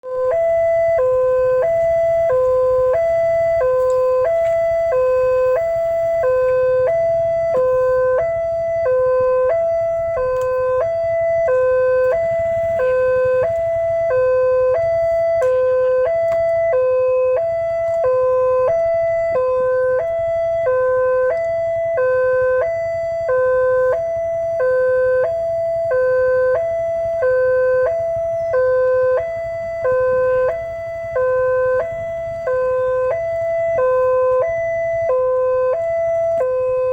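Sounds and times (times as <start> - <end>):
level crossing two-tone alarm: 0.0 - 36.9.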